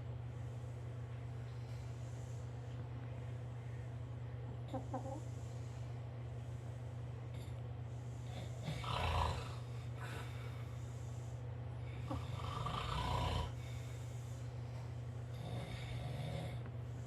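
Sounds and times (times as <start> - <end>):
dog snoring: 8.2 - 10.2, 12.0 - 13.6, 15.3 - 16.6.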